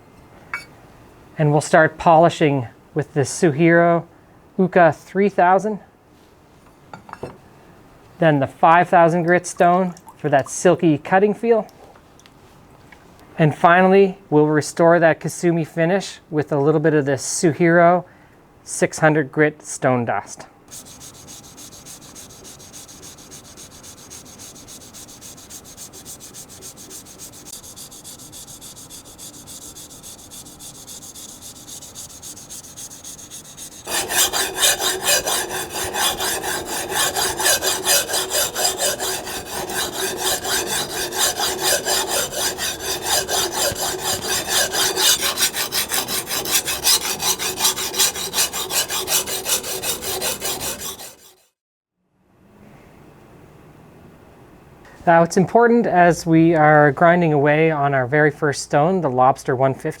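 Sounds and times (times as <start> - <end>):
knife grinding on sharpening stone: 20.7 - 51.5.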